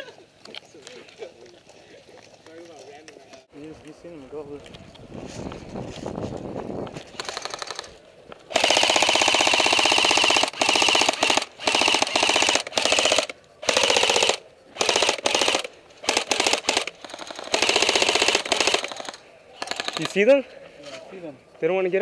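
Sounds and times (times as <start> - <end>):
airsoft rifle firing bursts: 7.1 - 20.3.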